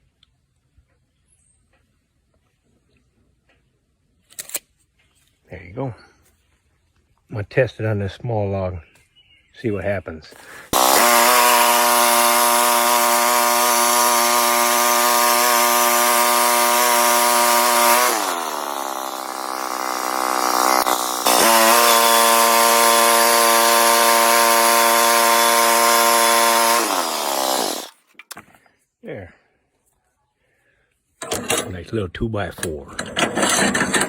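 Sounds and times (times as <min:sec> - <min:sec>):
sawmill engine drone: 0:10.8 - 0:27.9.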